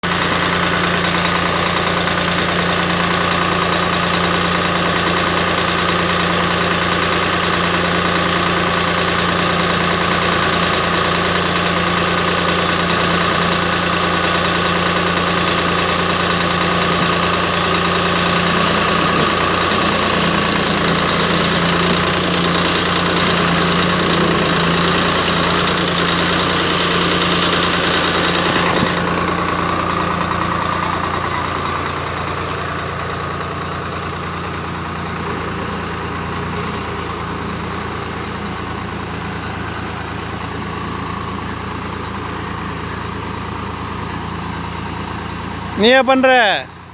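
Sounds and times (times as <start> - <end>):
tractor engine running: 0.0 - 46.9.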